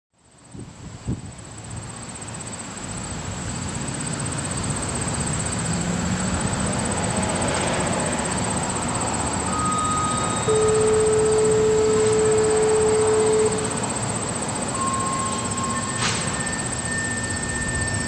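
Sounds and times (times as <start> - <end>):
steady high-pitched whine: 0.3 - 18.0
wind rumble on microphone: 0.5 - 1.7
warning siren tone: 8.1 - 18.0.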